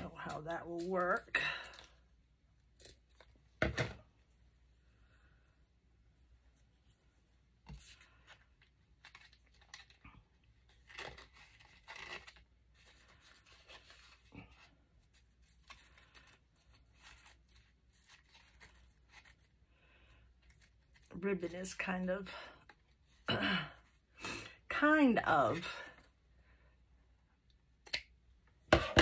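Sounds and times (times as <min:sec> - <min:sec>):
paper and ribbon rustling: 0:07.8 - 0:19.6.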